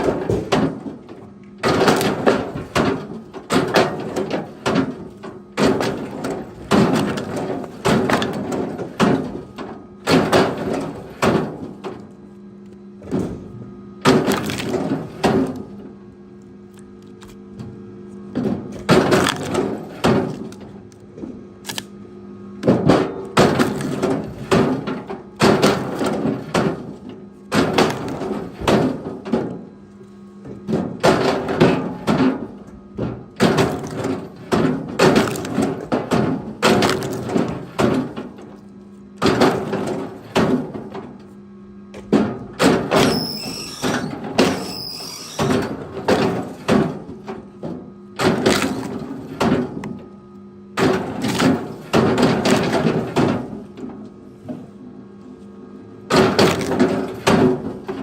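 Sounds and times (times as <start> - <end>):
firewood clattering together: 0.0 - 12.1, 13.0 - 15.8, 18.3 - 21.8, 22.6 - 29.6, 30.4 - 38.6, 39.2 - 41.2, 41.9 - 50.0, 50.8 - 54.6, 56.1 - 58.0.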